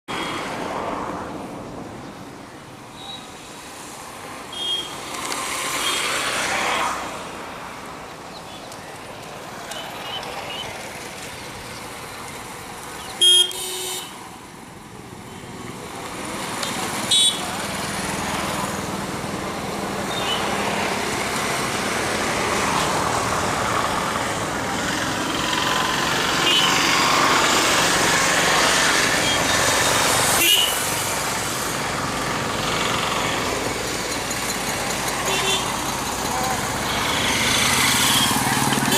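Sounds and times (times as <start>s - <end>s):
road traffic rushing: 0.1s - 38.9s
engine noise: 3.0s - 38.9s
vehicle passing by: 15.6s - 38.9s.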